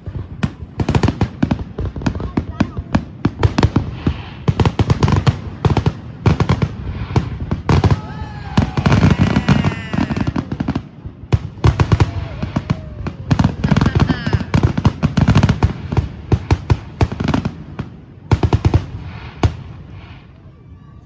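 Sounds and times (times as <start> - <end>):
fireworks bangs and crackles: 0.0 - 21.0
whistling firework shells: 7.0 - 14.7.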